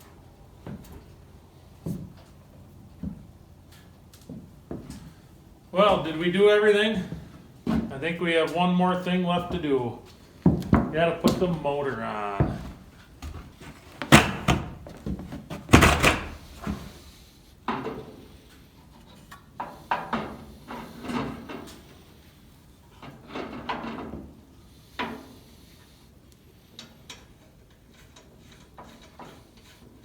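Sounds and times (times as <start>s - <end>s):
knocks and thuds of motor handling: 12.4s - 17.1s.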